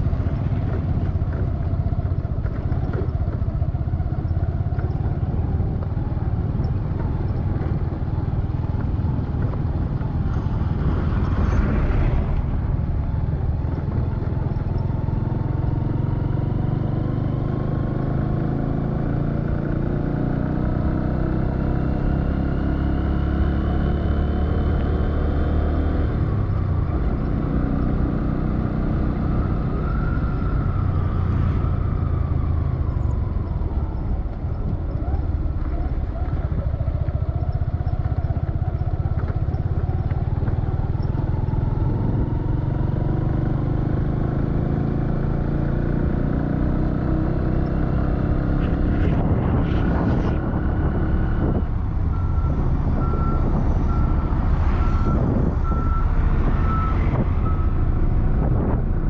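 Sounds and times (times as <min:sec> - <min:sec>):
vehicle engine running: 0:30.3 - 0:59.0
vehicle passing loudly: 0:41.8 - 0:59.0.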